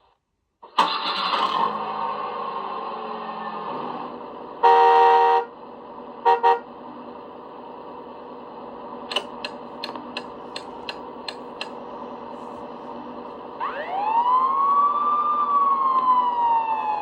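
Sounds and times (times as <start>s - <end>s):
car horn: 4.6s - 5.6s, 6.2s - 6.7s
quick clicks: 9.1s - 11.8s.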